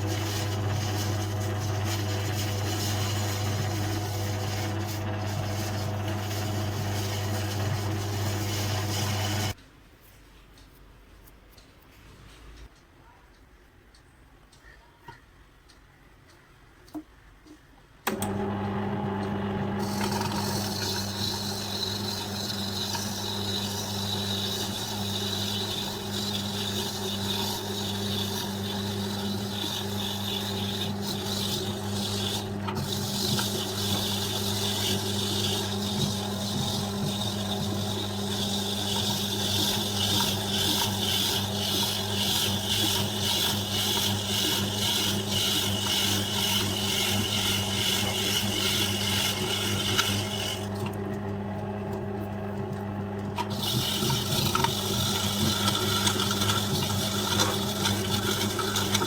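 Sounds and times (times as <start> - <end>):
wet grinder motor humming: 0.0 - 9.6, 18.1 - 59.0
gritty scraping noise: 53.4 - 59.0.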